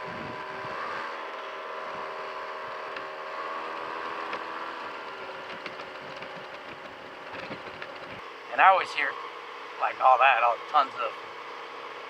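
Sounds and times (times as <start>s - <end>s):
wind noise: 0.0s - 0.8s
scooter engine running: 0.0s - 12.0s.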